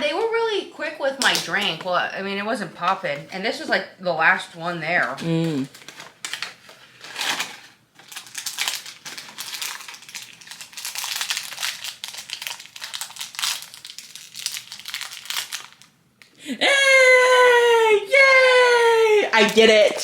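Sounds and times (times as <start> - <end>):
plastic packaging crinkling: 5.0 - 16.0.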